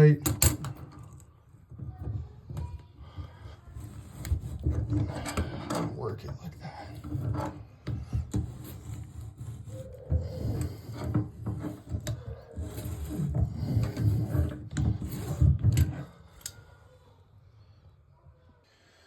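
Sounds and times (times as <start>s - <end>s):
metal scraping and grinding: 8.2s - 16.2s.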